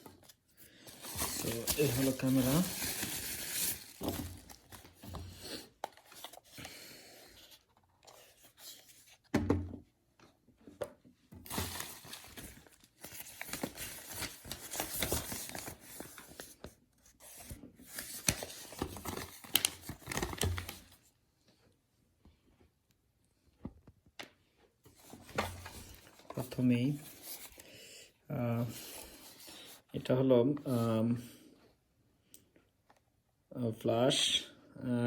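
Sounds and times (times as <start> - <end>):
wrapping crinkling and tearing: 0.0 - 5.0, 11.5 - 16.6, 17.2 - 21.0.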